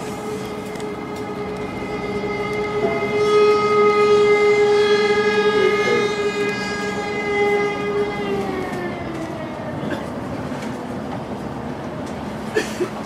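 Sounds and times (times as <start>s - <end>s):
warning siren wailing: 0.0s - 9.8s.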